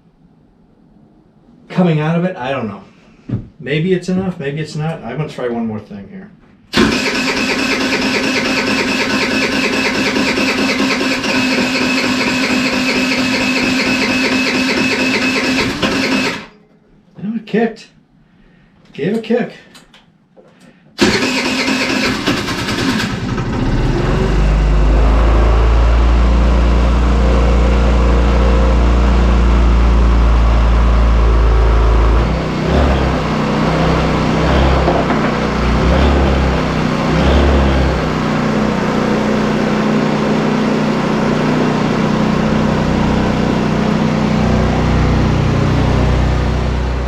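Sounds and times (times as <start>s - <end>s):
scooter engine running: 6.8s - 16.5s, 21.0s - 25.7s, 29.2s - 47.0s.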